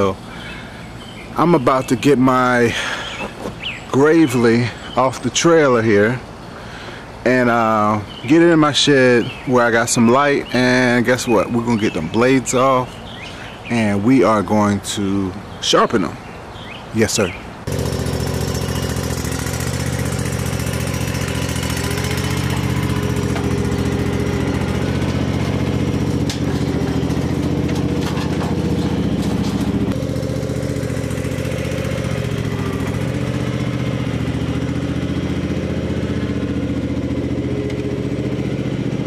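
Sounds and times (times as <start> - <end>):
mower engine running: 0.0 - 8.5, 17.6 - 39.0
clicks: 26.2 - 30.0.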